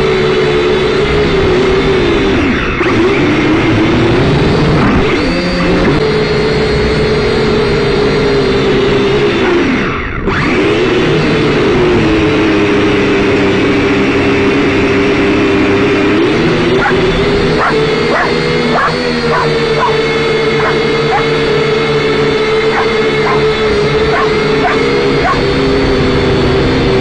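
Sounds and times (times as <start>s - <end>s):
quadcopter rotors whining: 0.0s - 27.0s
dog barking and yipping: 16.8s - 21.5s, 22.6s - 25.5s.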